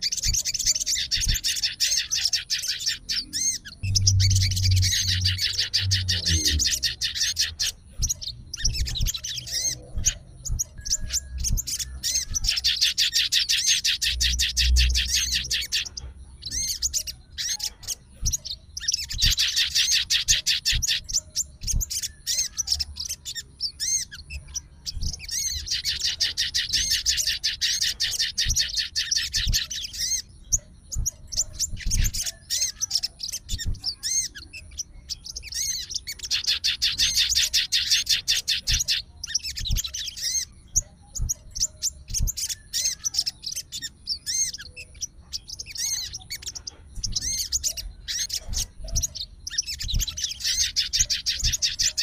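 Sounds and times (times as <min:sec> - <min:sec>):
bird rattling trills: 0:00.0 - 0:24.3, 0:25.0 - 0:40.5
bird chirps and clicks: 0:00.0 - 0:52.0.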